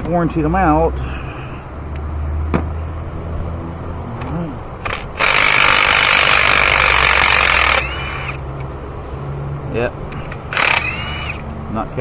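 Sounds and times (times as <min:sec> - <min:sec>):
ratchet clicking: 0:04.8 - 0:08.4, 0:10.1 - 0:11.5.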